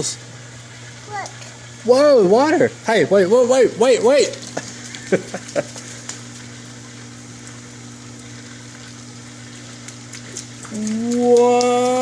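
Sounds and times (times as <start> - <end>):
rain drops ticking: 4.3 - 12.0.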